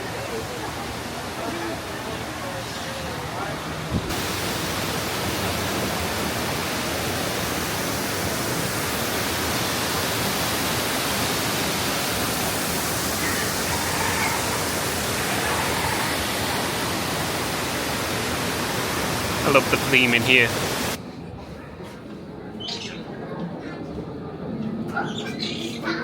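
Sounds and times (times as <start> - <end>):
faint voices: 0.0 - 4.3, 11.8 - 18.4, 19.4 - 26.0
steady rushing noise: 0.0 - 21.1.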